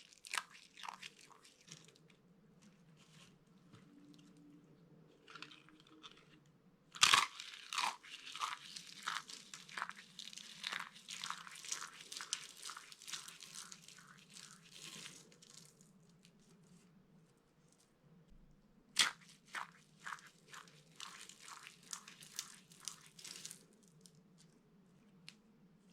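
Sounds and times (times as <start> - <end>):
bar soap crushing and cracking: 0.0 - 2.1, 7.0 - 16.4, 19.0 - 24.5.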